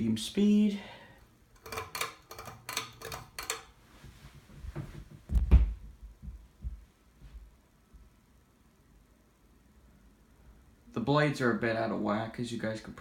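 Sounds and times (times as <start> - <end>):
ceiling fan thumping and throbbing: 3.1 - 8.5.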